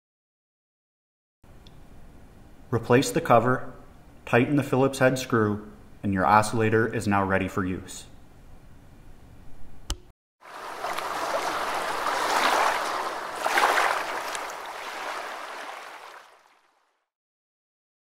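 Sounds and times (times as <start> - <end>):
sharp click: 9.9 - 10.1
rushing splashing water: 10.4 - 17.0.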